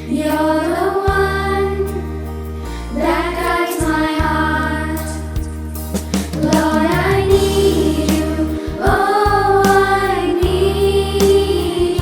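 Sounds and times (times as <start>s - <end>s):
low instrumental notes: 3.0s - 12.0s
person singing a hymn: 6.3s - 12.0s.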